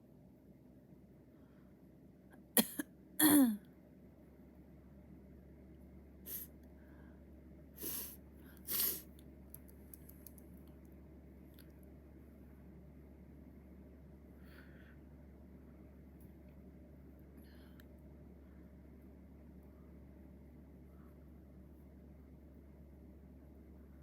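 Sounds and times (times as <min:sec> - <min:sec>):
faint breath sounds: 0:01.2 - 0:02.0, 0:06.3 - 0:09.1, 0:14.3 - 0:15.2, 0:17.3 - 0:18.8
person sneezing: 0:02.6 - 0:03.6, 0:07.8 - 0:09.0.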